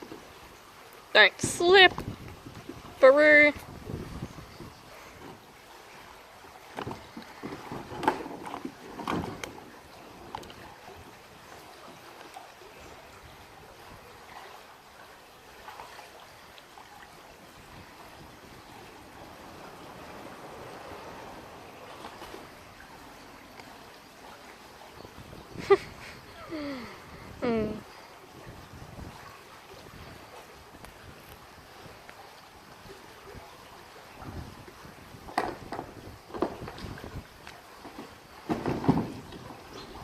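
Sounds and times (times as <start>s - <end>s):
water splashing around kayak: 0.0s - 27.3s, 27.9s - 40.0s.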